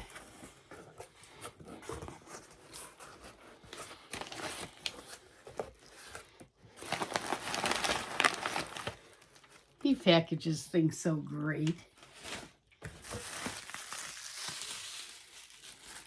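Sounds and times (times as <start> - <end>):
packaging tearing and crinkling: 6.8 - 9.7, 12.1 - 16.0.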